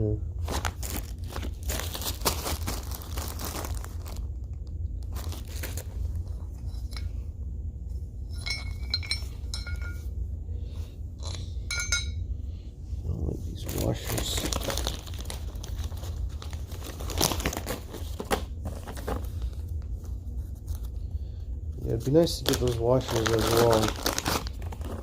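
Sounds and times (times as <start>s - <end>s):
steady low hum: 0.0s - 25.0s
metal parts rustling and clicking: 8.3s - 10.0s
metal clinks ringing: 8.3s - 10.1s, 11.2s - 12.3s.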